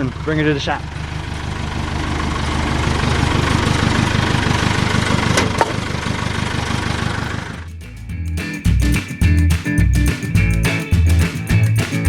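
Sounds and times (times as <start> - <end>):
tractor engine running at low revs: 0.0 - 8.8.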